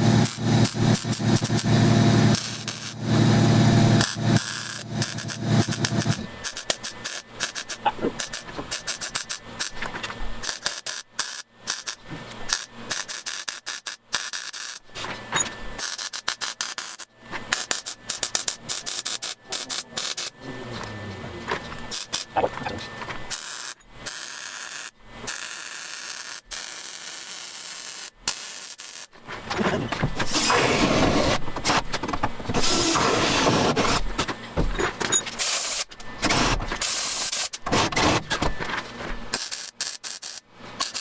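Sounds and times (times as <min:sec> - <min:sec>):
welder crackling: 0:00.0 - 0:09.8.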